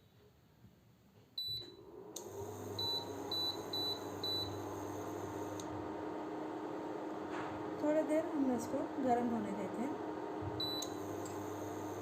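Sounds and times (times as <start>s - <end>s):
cooling fan and hum: 1.9s - 12.0s
cooktop beeps: 2.6s - 5.3s, 10.6s - 11.9s.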